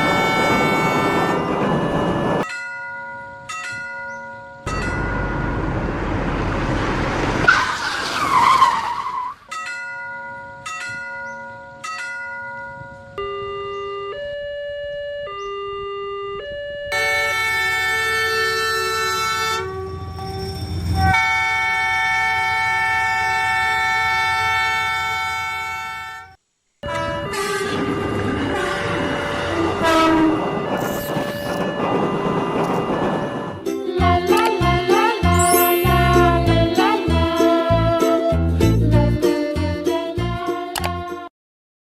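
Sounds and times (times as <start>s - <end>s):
train horn: 0.0s - 2.4s, 17.0s - 20.2s, 21.0s - 33.5s
train rushing past: 0.0s - 2.4s, 4.7s - 8.3s, 18.8s - 21.6s, 26.9s - 37.2s
crossing bell ringing: 0.0s - 5.9s, 9.5s - 13.8s, 16.9s - 22.7s, 27.0s - 36.4s
two-note alternating tone: 26.8s - 36.8s.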